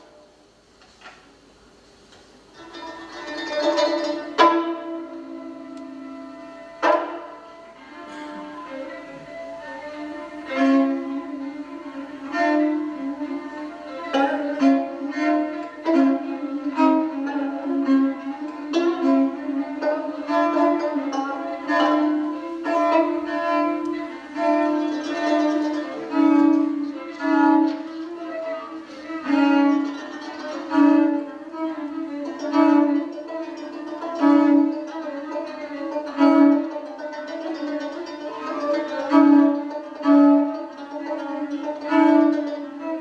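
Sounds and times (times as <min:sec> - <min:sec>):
bowed strings music: 0:00.0 - 0:01.3, 0:02.2 - 0:43.0.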